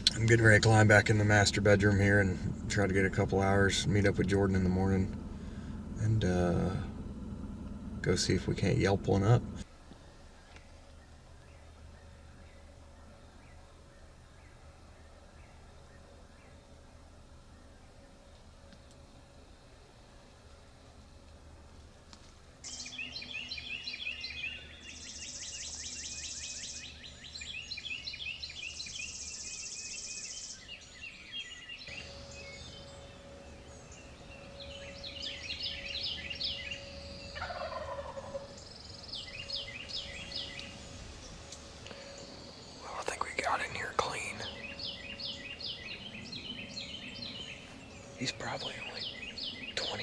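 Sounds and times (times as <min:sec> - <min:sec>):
songbirds chirping and trilling: 0:00.0 - 0:50.0
turkey gobbling: 0:35.2 - 0:40.7.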